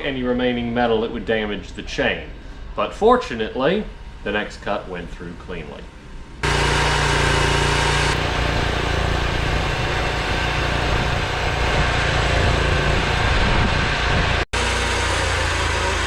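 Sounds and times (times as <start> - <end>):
chainsaw cutting through log: 6.4 - 13.2, 14.6 - 16.0.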